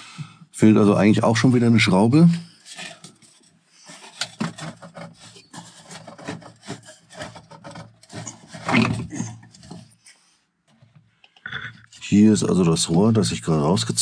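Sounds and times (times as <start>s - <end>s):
hose scraping and rustling: 2.5s - 10.1s.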